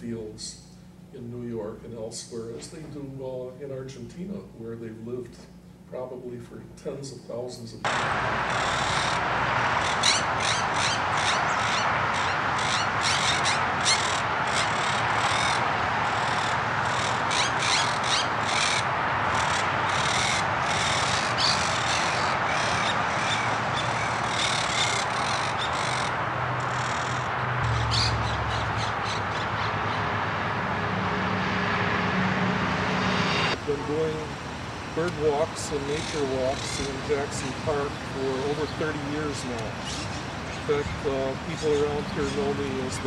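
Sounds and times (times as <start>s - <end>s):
steady background noise: 0.0s - 43.0s
parakeets squawking: 7.9s - 30.1s, 35.3s - 37.4s
low rumble: 27.5s - 33.6s.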